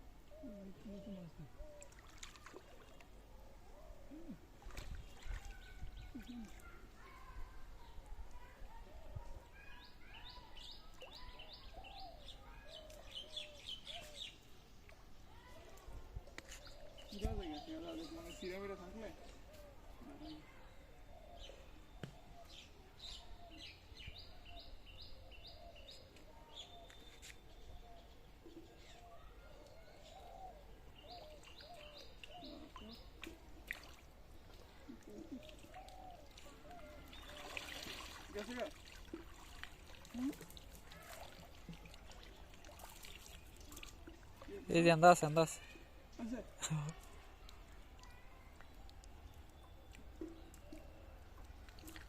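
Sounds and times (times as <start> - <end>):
birds chirping high: 3.8 - 8.5, 9.5 - 15.6, 16.3 - 38.9.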